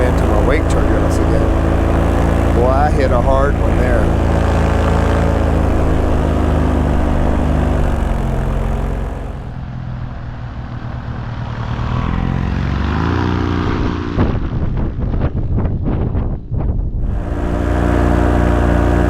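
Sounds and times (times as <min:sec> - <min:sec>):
paramotor engine and propeller: 0:00.0 - 0:19.0.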